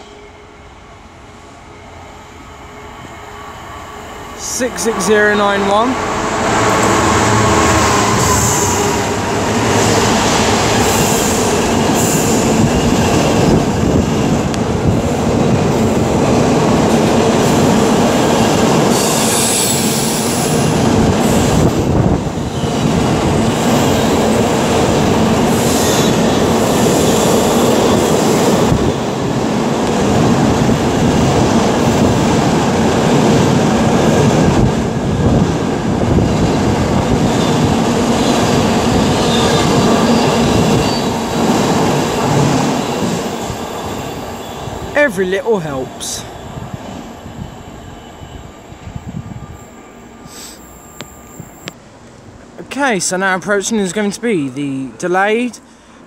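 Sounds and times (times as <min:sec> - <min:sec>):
freight train wheels rumbling: 0:00.0 - 0:52.9.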